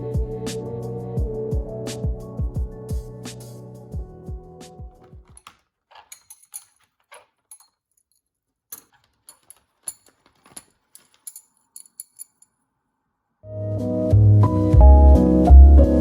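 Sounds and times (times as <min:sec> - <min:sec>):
small metallic jingles: 0:05.0 - 0:12.7.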